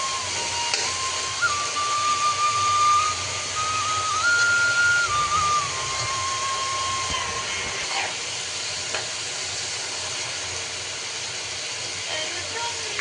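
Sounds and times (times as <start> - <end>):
whistle-like melody: 0.0 - 7.9
food sizzling in oil: 0.0 - 13.0.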